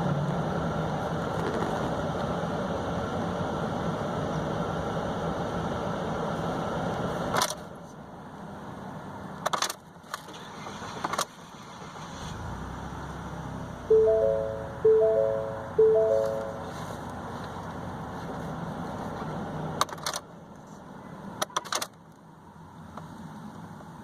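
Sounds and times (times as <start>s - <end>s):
truck engine running: 10.8s - 17.8s.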